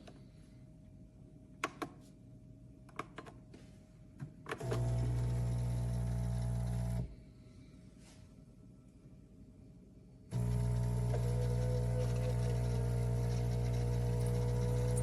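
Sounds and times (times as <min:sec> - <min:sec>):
electric pump hum: 0:04.6 - 0:07.1, 0:10.3 - 0:15.0.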